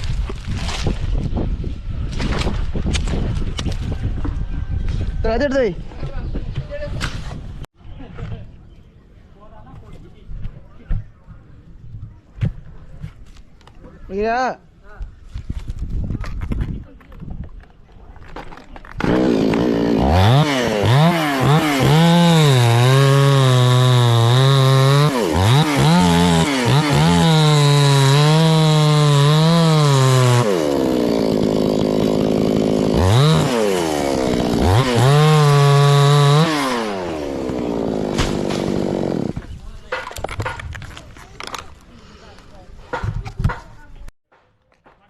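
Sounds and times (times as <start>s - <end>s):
chainsaw engine revving: 19.0s - 39.4s.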